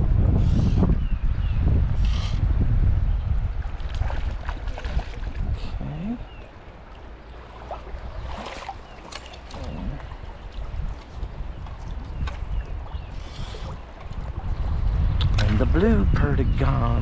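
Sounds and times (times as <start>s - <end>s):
wind buffeting microphone: 0.0s - 17.0s
water splashes: 3.6s - 15.8s.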